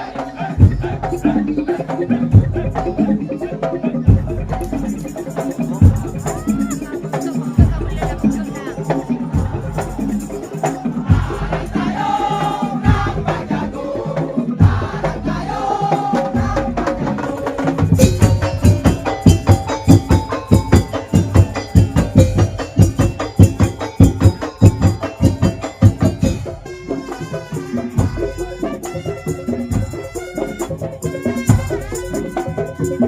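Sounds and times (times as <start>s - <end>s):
percussion band playing: 0.0s - 33.0s
melodic notes: 18.0s - 26.7s.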